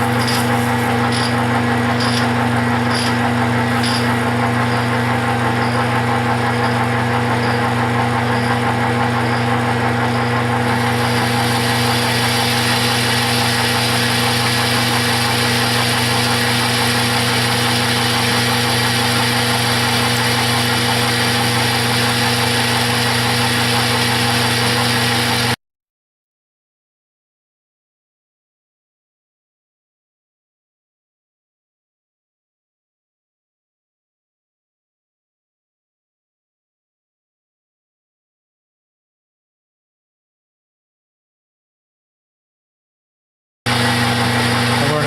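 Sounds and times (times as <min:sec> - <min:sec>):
metal lathe motor hum: 0:00.0 - 0:25.6, 0:43.7 - 0:45.0
cutting tool hissing on steel: 0:10.7 - 0:22.8.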